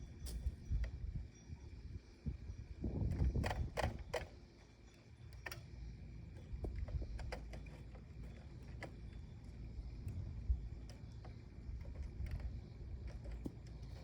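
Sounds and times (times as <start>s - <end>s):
low wind rumble on microphone: 0.0s - 4.5s, 6.0s - 14.0s.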